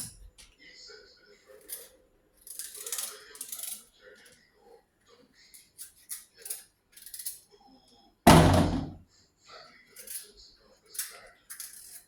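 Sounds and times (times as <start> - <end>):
loud thump: 8.3 - 9.0.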